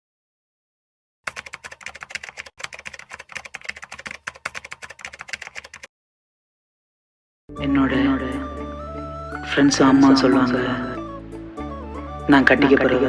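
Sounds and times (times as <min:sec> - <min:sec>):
keyboard typing: 0:01.3 - 0:05.9.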